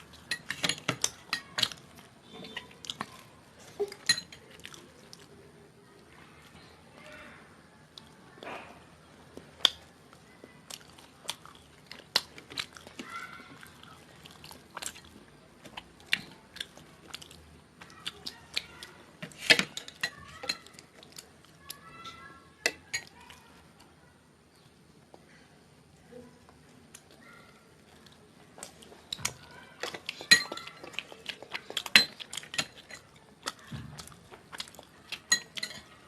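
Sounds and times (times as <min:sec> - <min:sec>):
chewing and biting food: 0:09.3 - 0:18.9, 0:27.8 - 0:36.0.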